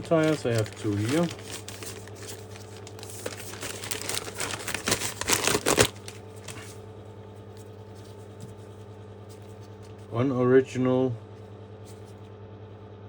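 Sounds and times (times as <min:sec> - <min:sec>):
plastic packaging crinkling: 0:00.0 - 0:08.6.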